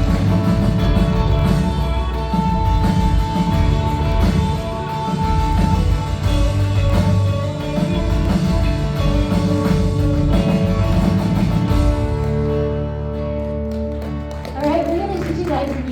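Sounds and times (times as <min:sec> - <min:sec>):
drum kit playing steady beat: 0:00.0 - 0:12.6
guitars: 0:00.0 - 0:15.9.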